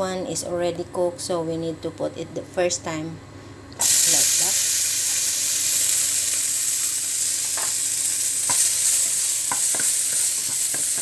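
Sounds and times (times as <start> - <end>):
food sizzling in a frying pan: 3.8 - 11.0.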